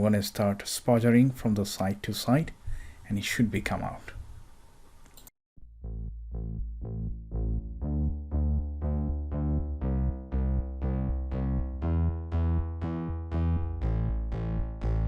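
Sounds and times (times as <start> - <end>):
electronic synthesizer music: 5.6 - 15.0.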